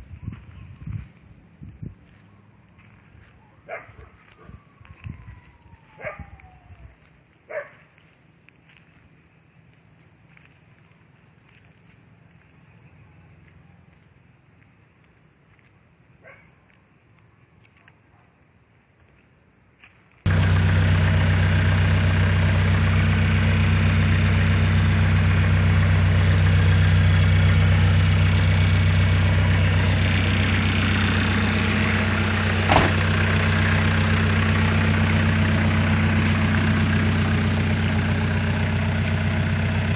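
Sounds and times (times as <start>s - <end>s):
diesel engine idling: 20.3s - 39.9s.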